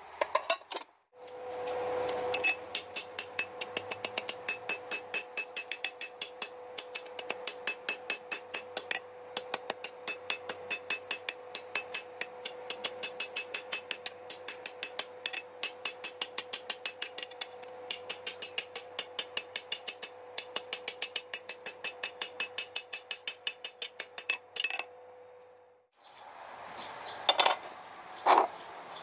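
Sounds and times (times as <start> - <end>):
hammer striking steel on anvil: 2.2 - 24.9.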